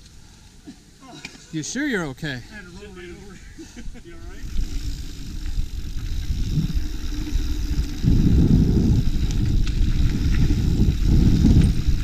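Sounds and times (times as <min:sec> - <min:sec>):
bike clicks and rattles: 0:04.2 - 0:12.0
wind buffeting a microphone: 0:04.3 - 0:12.0.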